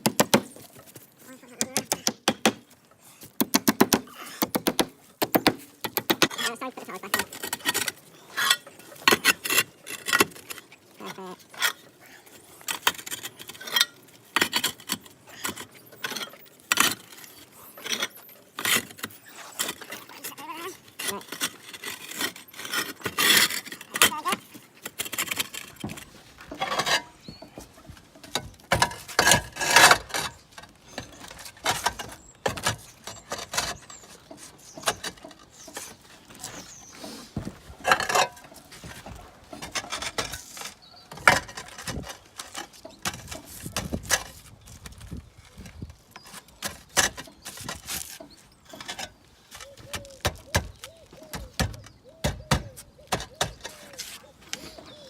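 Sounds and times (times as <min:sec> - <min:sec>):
roof tiles clinking and knocking: 0:12.6 - 0:36.7, 0:37.4 - 0:55.0.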